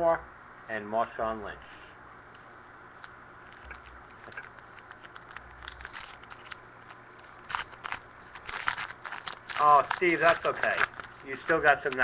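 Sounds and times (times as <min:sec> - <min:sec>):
wrapper crinkling and tearing: 0:03.5 - 0:12.0.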